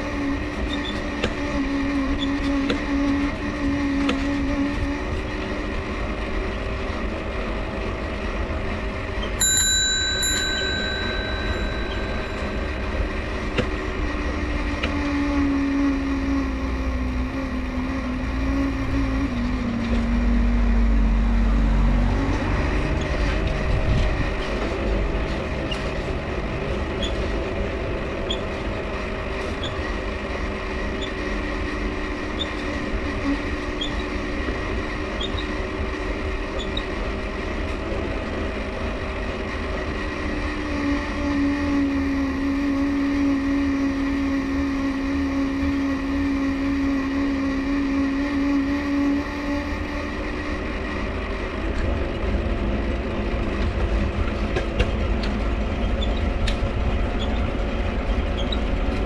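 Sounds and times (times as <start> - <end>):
bicycle dynamo whine: 0.0 - 59.0
low rolling rumble: 9.8 - 29.4
bicycle crank squeaks: 27.0 - 27.2, 29.6 - 29.8, 35.2 - 35.6, 36.6 - 36.9, 58.3 - 58.7.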